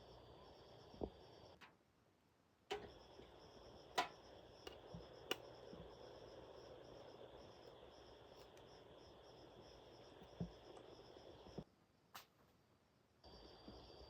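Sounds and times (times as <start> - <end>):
insects chirping: 0.0 - 1.8, 2.6 - 14.0.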